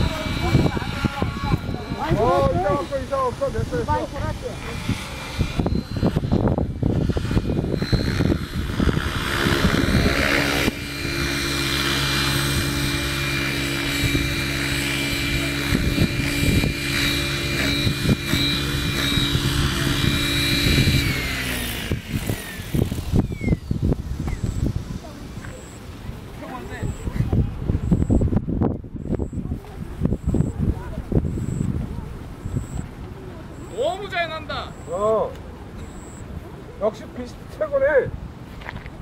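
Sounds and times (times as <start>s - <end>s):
high electric motor whine: 0.0s - 30.6s
wind buffeting microphone: 0.0s - 34.2s
helicopter rotor hum: 0.0s - 35.2s.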